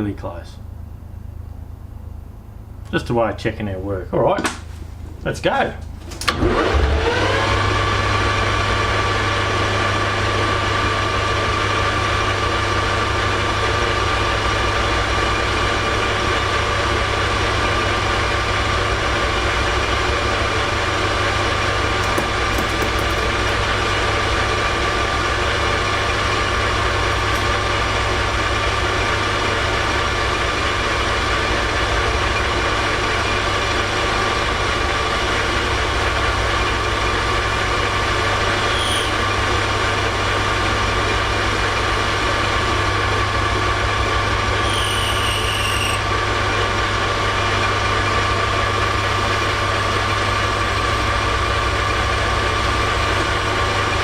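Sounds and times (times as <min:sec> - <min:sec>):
metal lathe motor whine: 0:06.3 - 0:13.5, 0:14.1 - 0:54.0
parting tool cutting metal: 0:22.0 - 0:23.9.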